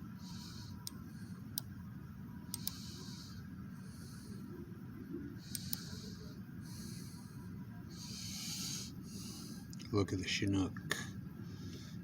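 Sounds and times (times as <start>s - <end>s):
soft breathing close up: 0.0s - 1.6s, 2.5s - 4.7s, 5.3s - 9.7s, 11.4s - 12.0s
low steady hum: 0.0s - 12.0s
sharp clicks: 2.5s - 2.8s.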